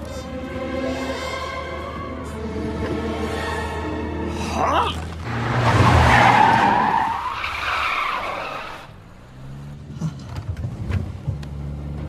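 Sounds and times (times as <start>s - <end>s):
engine hum: 0.0s - 12.0s
car tyres squealing: 4.5s - 10.4s.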